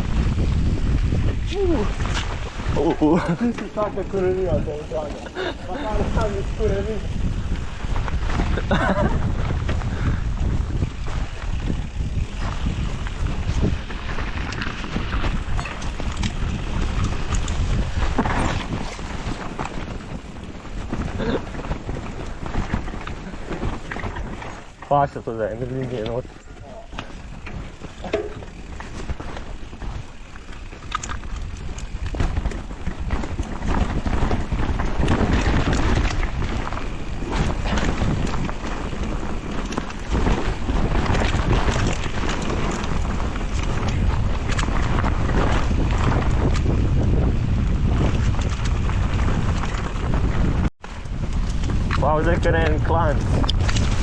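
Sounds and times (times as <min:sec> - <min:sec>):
bike rattling over rough ground: 0:00.0 - 0:54.0
tyres rumbling on trail: 0:00.0 - 0:54.0
wind buffeting microphone: 0:00.0 - 0:54.0.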